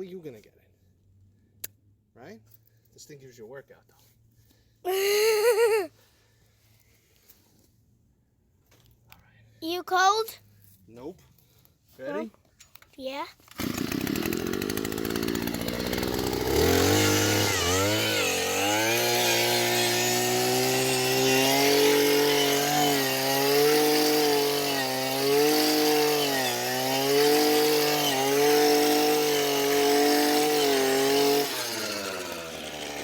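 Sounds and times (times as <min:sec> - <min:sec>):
earth auger motor humming: 0:13.5 - 0:33.0.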